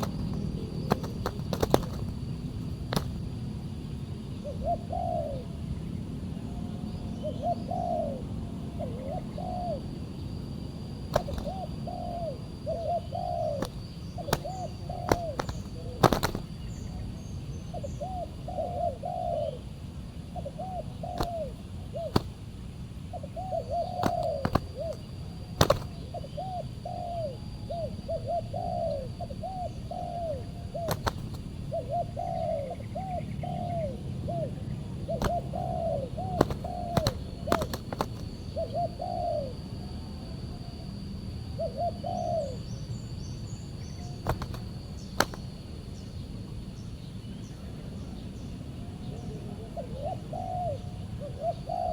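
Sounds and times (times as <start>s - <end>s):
sharp clicks: 0.0s - 2.2s, 11.2s - 11.5s, 36.4s - 38.3s
doves cooing: 0.0s - 3.4s, 4.3s - 5.6s, 7.2s - 10.0s, 10.9s - 17.1s, 17.7s - 40.8s, 41.6s - 42.7s, 43.9s - 45.6s, 48.9s - 51.9s.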